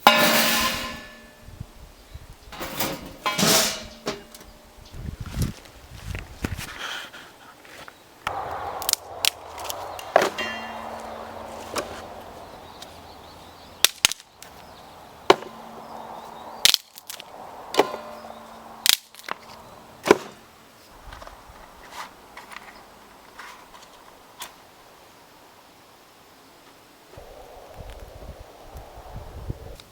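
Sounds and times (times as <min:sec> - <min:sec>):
sharp strikes with metallic ring: 0:10.2 - 0:11.6.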